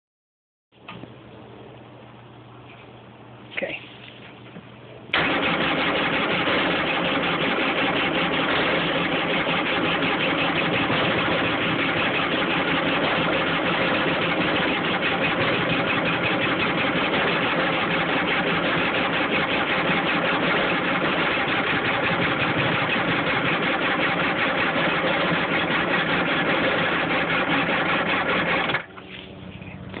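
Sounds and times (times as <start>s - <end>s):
electric starter cranking engine: 5.2s - 28.9s.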